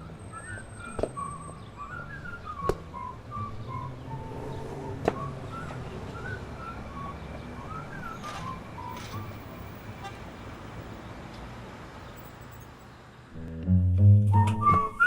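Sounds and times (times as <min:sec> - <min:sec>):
traffic hum: 0:00.0 - 0:13.7
whistled tune with guitar: 0:00.1 - 0:09.1, 0:14.0 - 0:15.0.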